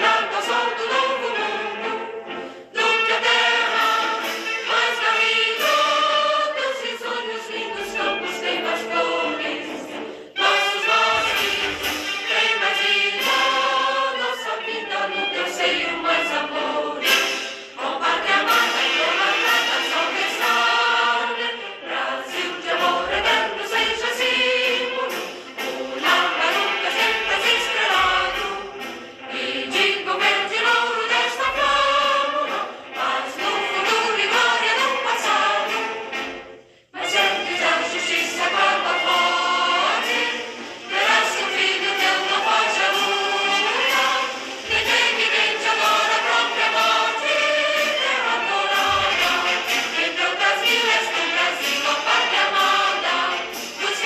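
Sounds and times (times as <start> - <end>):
choir singing sustained notes: 0.0 - 54.0.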